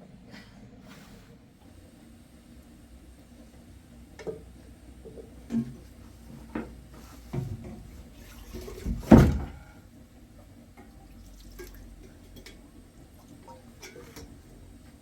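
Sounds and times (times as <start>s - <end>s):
heavy thud: 8.9s - 9.7s.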